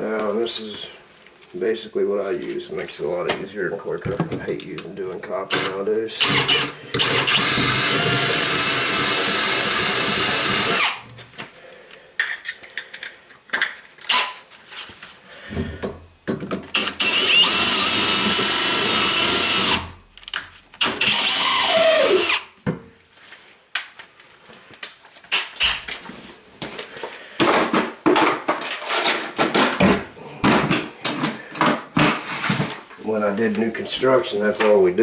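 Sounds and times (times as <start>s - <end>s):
power drill spinning brush on pipe: 5.6s - 11.0s, 16.8s - 19.9s, 20.8s - 22.4s.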